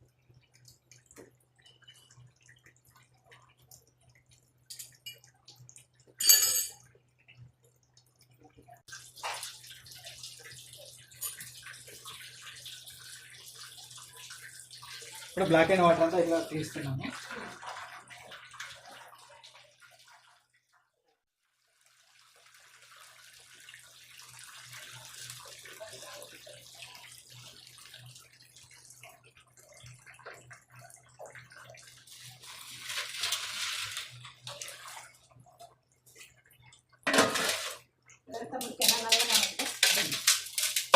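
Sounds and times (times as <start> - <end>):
water splashing out draining: 8.9 - 20.4.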